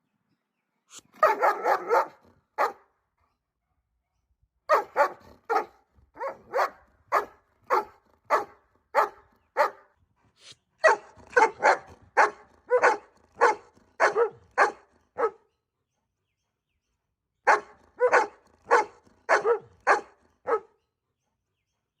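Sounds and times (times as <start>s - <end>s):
dog barking sharply: 1.2s - 2.8s.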